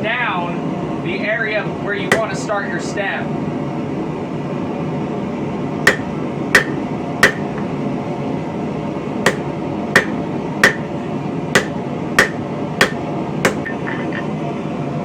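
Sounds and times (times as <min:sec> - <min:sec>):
hammer striking steel on anvil: 0:02.1 - 0:02.4, 0:05.9 - 0:07.7, 0:09.3 - 0:10.9, 0:11.6 - 0:14.0.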